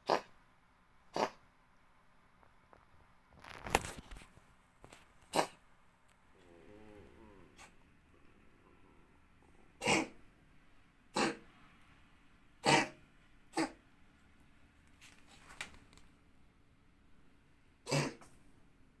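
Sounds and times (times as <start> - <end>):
cat coughing: 9.8 - 10.2, 11.2 - 11.4, 12.6 - 13.8, 17.8 - 18.4.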